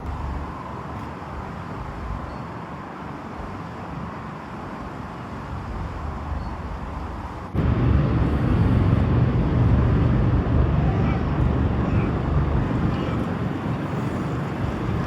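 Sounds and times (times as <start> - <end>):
road traffic: 0.0 - 15.0
wind buffeting microphone: 4.8 - 15.0.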